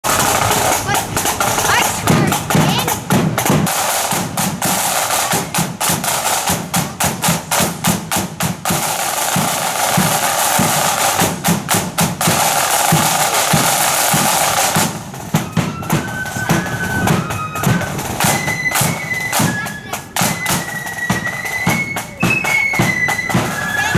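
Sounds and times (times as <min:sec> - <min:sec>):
snare drums rattling: 0:00.0 - 0:23.9
bass drum beats: 0:00.1 - 0:03.7
flutes playing a tune: 0:12.5 - 0:23.9.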